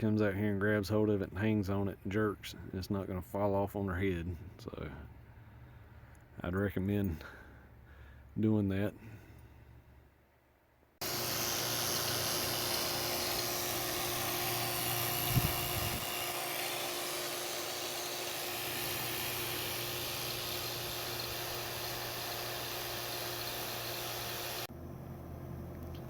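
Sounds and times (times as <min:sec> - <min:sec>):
machine motor hum: 0:11.0 - 0:26.0.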